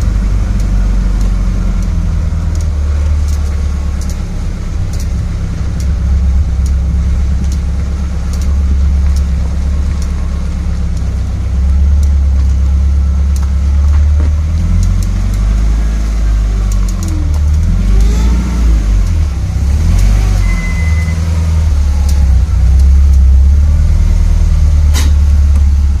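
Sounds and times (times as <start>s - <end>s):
car engine rumbling: 0.0s - 26.0s
light clicking: 0.1s - 11.1s, 16.6s - 18.1s.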